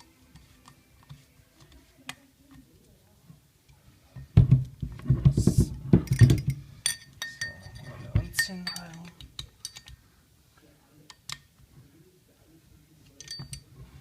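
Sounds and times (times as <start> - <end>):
metal tools knocking and rattling: 4.6 - 10.0, 13.2 - 13.8.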